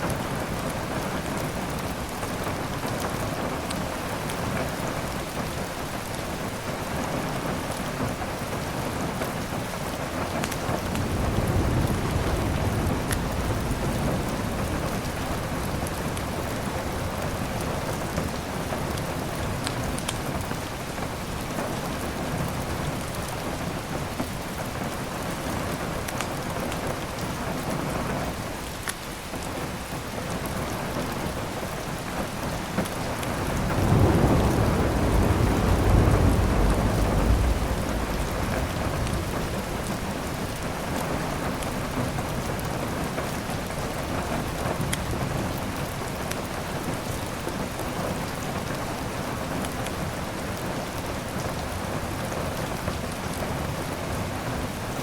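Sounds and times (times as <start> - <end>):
heavy rain: 0.0 - 55.0
thunder rolling: 10.6 - 17.7, 32.8 - 42.5
wood fire crackling: 32.8 - 42.0.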